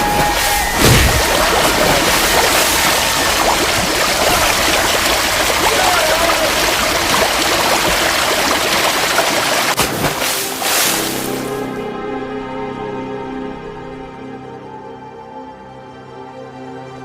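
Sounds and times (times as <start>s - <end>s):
rushing gurgling water: 0.0s - 11.6s.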